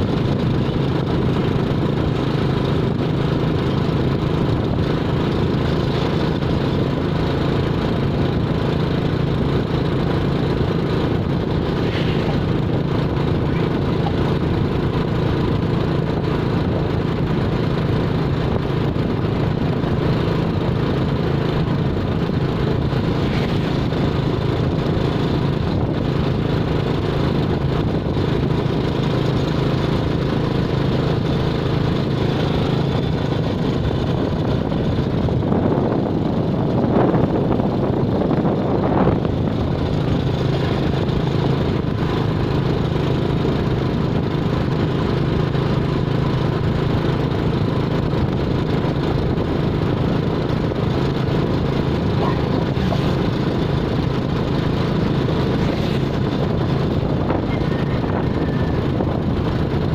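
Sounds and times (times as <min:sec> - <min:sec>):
tire noise on the road: 0:00.0 - 0:59.9
vehicle engine humming: 0:00.0 - 0:59.9.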